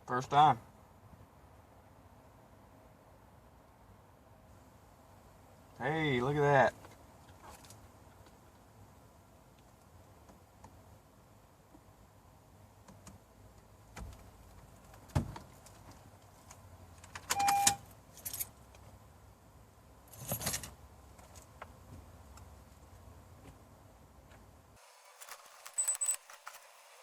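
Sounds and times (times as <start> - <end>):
short beep: 17.4 - 17.8, 25.8 - 26.2.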